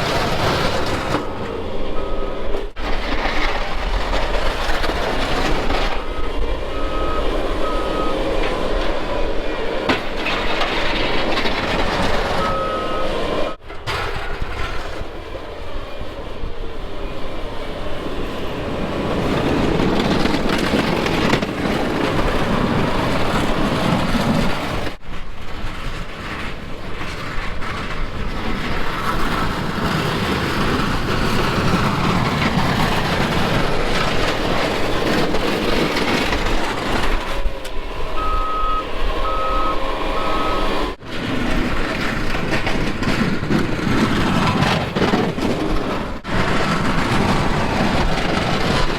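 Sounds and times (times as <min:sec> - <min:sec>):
backup alarm beeping: 0:01.2 - 0:02.6, 0:06.0 - 0:08.5, 0:12.3 - 0:13.6, 0:38.2 - 0:41.0.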